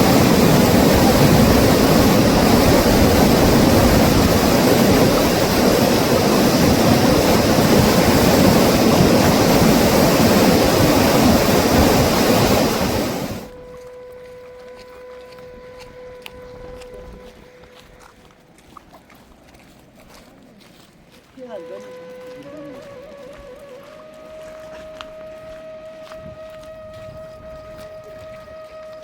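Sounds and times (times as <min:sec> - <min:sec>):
fast river rushing: 0:00.0 - 0:13.5
faint steady hum: 0:00.0 - 0:18.5.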